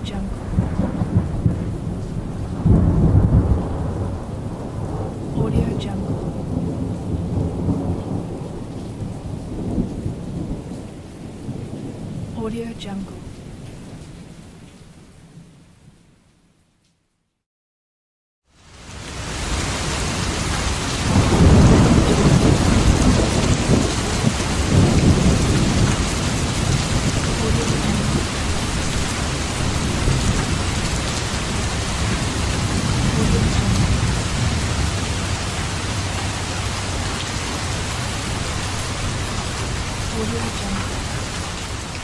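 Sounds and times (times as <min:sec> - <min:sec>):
thunder rumbling: 0:00.0 - 0:13.5, 0:19.3 - 0:42.0
light rain: 0:00.0 - 0:17.4, 0:18.5 - 0:42.0.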